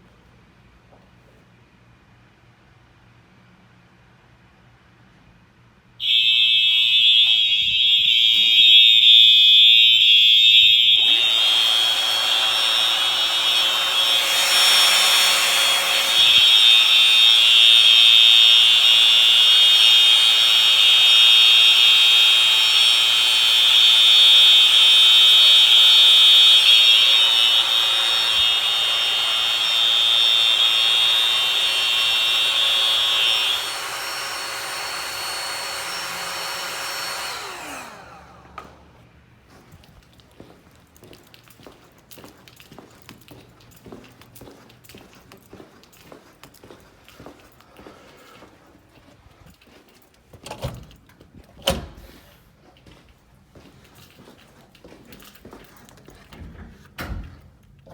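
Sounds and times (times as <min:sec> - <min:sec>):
fire alarm horns high-pitched tone: 0:06.0 - 0:37.9.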